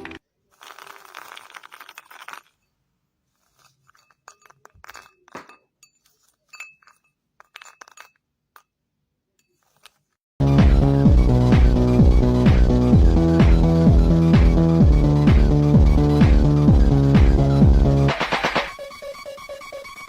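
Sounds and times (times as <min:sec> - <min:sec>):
light clicks and clinks: 0:03.5 - 0:08.7.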